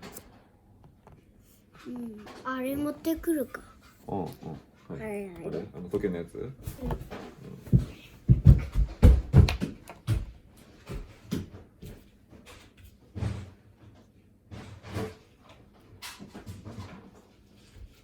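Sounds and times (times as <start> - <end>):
objects knocking and thumping: 6.6 - 17.4.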